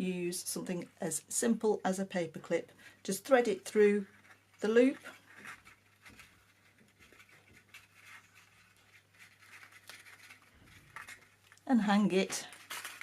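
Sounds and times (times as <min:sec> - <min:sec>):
light scratching: 0:02.5 - 0:13.0
paper rustling: 0:03.1 - 0:13.0.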